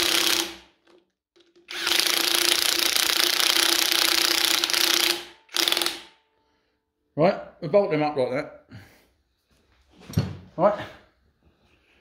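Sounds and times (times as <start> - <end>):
power tool running bolts: 0.0 - 6.1.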